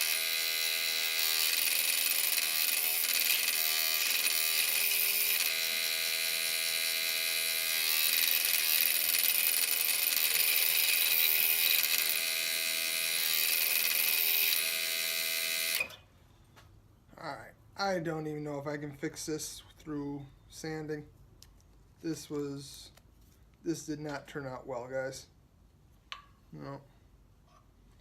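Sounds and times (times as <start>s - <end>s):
electric saw cutting wood: 0.0s - 16.0s.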